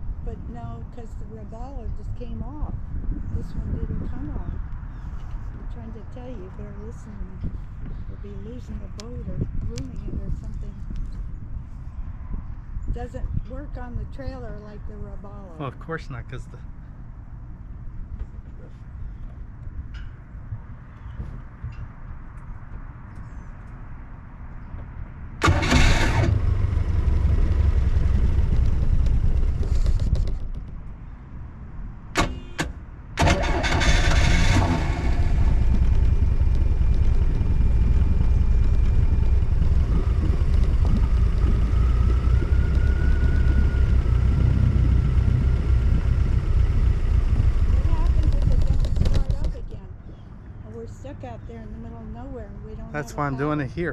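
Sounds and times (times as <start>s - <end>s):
boat motor starting and running: 25.4s - 30.7s, 32.2s - 49.8s.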